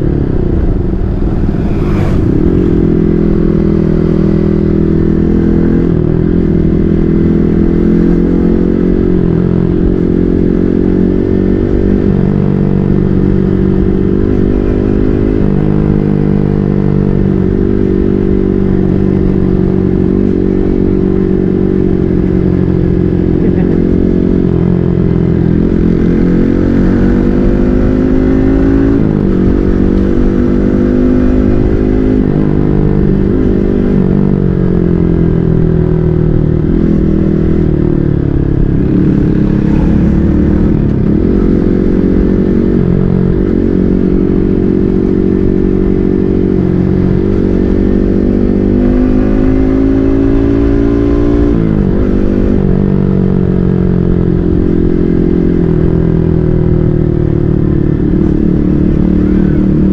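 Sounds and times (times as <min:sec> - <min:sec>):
motorcycle engine accelerating: 0:00.0 - 0:59.9.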